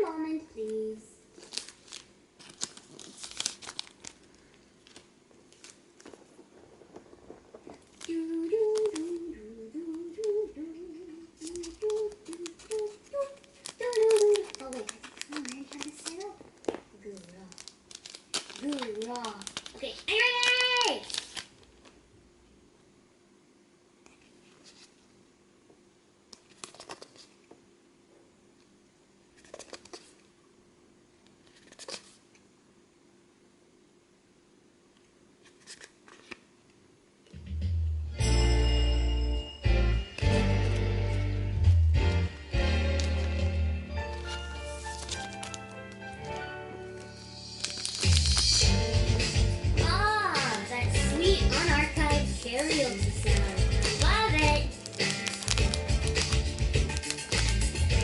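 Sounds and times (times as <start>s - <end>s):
crinkling and clicking from handling: 1.4s - 10.4s, 11.4s - 22.0s, 26.3s - 27.4s, 29.4s - 30.2s, 35.0s - 36.4s, 44.9s - 46.4s, 52.3s - 57.8s
person humming a tune: 8.1s - 14.6s.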